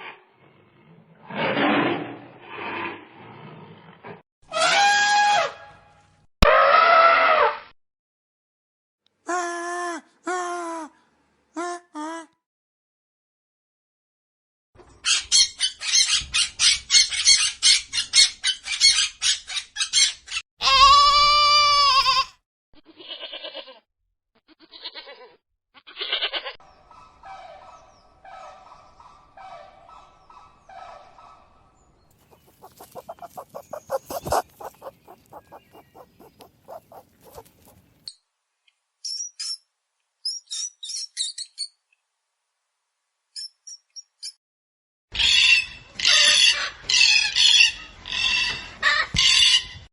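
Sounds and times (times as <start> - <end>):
drawn-out animal call: 32.2 - 38.0
high bird chirps: 32.2 - 38.0
rapid pulsing animal calls: 32.2 - 38.0.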